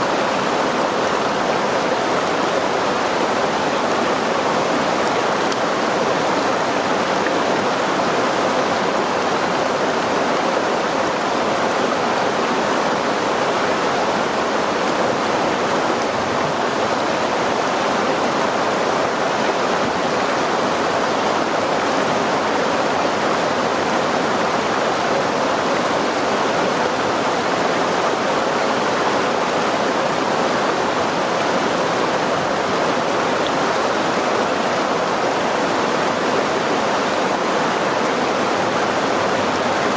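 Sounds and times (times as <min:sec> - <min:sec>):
water rushing over rocks: 0:00.0 - 0:39.9.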